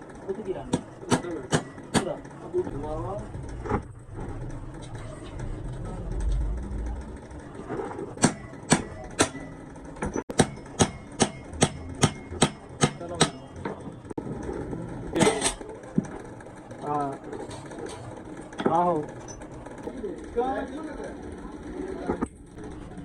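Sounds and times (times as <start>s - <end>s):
hammer striking metal: 0.7s - 2.2s, 8.1s - 13.8s, 15.2s - 15.6s.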